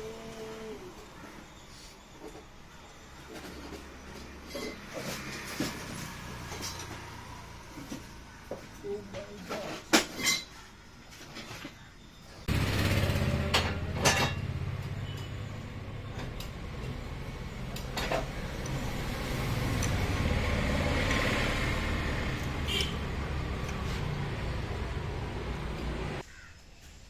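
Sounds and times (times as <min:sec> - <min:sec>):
motorcycle engine running: 0:12.5 - 0:16.0.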